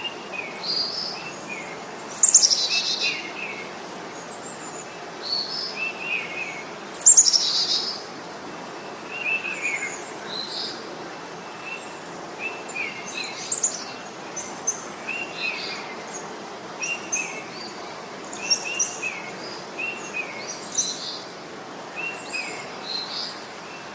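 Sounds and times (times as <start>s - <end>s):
steady outdoor hiss: 0.0s - 23.9s
birds chirping and calling: 0.4s - 3.7s, 4.4s - 8.0s.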